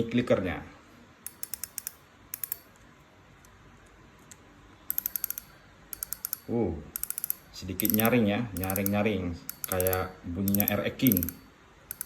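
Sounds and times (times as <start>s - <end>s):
fishing reel clicker ticking: 1.3s - 2.6s, 4.9s - 12.0s.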